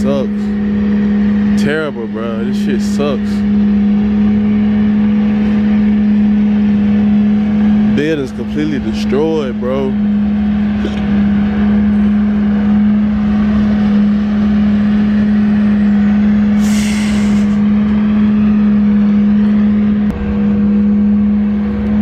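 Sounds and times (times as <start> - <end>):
motor humming: 10.0 - 22.0.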